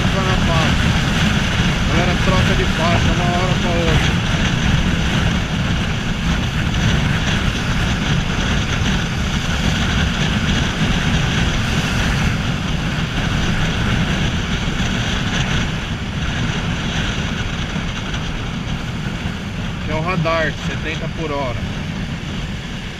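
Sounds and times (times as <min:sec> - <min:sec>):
motorcycle riding: 0:00.0 - 0:22.9
surrounding traffic: 0:00.0 - 0:22.9
wind rushing over microphone: 0:00.0 - 0:22.9.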